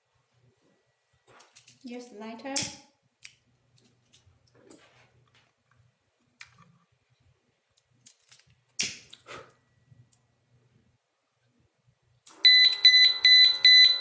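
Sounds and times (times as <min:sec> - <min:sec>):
faint clicks and handling noises: 0:01.2 - 0:01.9, 0:03.2 - 0:08.8.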